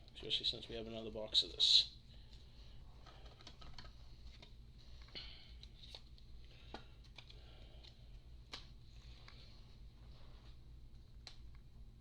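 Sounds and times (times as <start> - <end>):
low steady hum: 0.0 - 12.0
cards and plastic sleeves rustling: 2.2 - 11.5.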